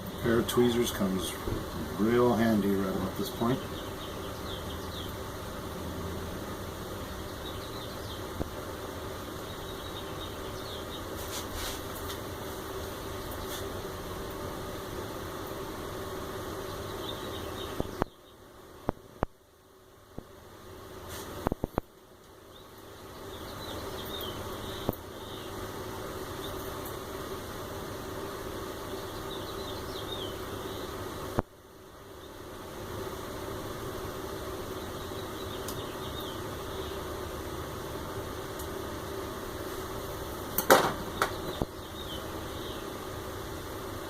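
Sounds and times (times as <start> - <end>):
low hum: 0.0 - 11.1
steady low hum: 0.0 - 44.0.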